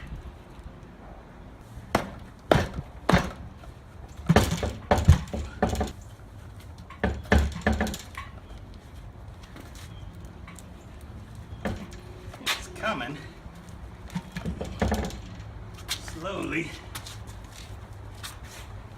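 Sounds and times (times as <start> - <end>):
knocks and clunks of handling: 4.2 - 6.0, 6.8 - 8.4, 11.5 - 12.2, 14.0 - 15.6.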